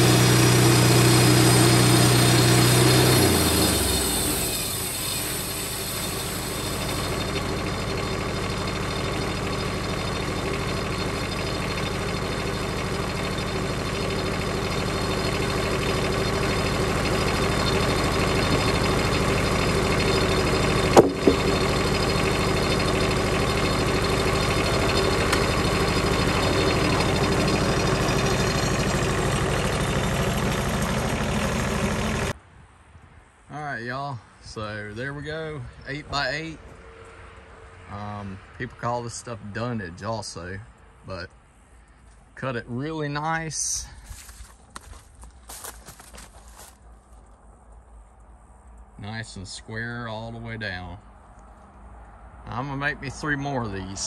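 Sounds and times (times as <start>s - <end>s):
bandsaw mill sawing log: 0.0s - 32.3s
sharp knock: 21.0s - 21.4s.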